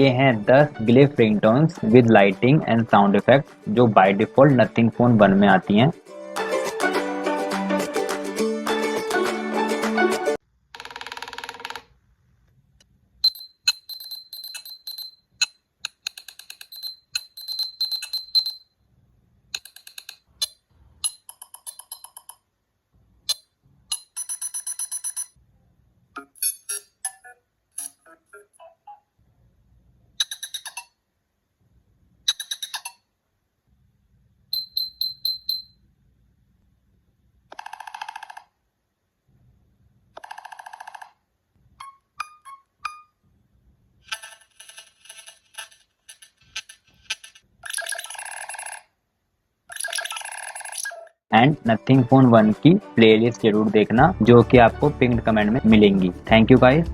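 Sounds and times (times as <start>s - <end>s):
electronic ringtone beeps and chirps: 16.7s - 18.7s.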